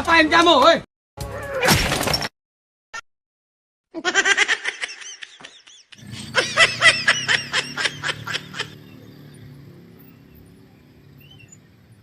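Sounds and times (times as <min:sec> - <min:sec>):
person laughing: 0:04.0 - 0:08.9.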